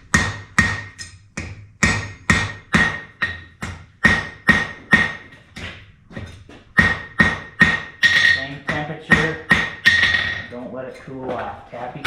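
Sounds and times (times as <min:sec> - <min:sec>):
hammer striking iron on anvil: 0:00.0 - 0:05.8, 0:06.8 - 0:10.6.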